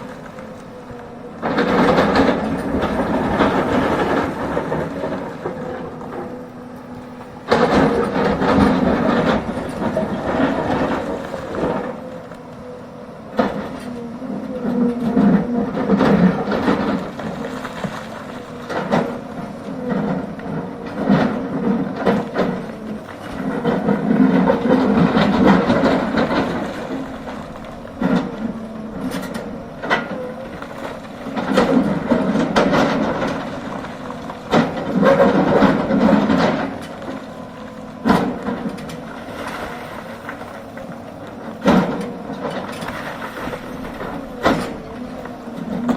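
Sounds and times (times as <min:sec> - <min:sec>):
excavator diesel engine: 0:00.0 - 0:45.9
bucket scraping rock and soil: 0:20.7 - 0:45.9.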